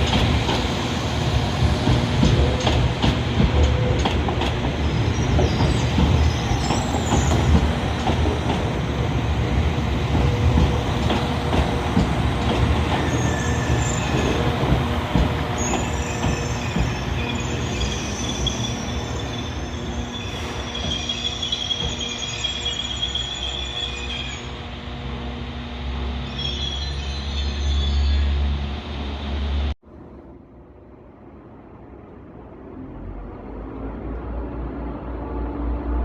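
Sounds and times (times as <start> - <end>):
train rumbling over rails: 0.0 - 36.0
high wavering wheel squeals: 13.0 - 14.5, 15.4 - 24.8, 26.1 - 28.7.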